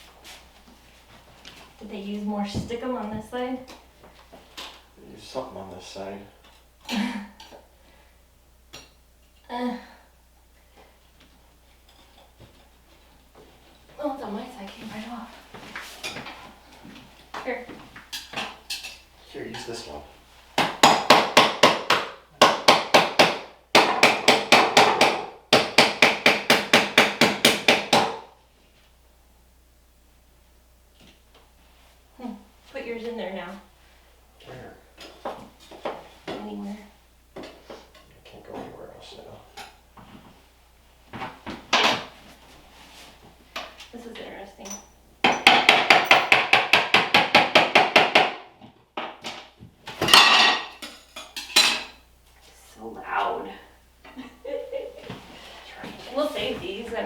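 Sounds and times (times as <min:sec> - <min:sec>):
hammer tapping metal prying tool: 0:44.7 - 0:48.4.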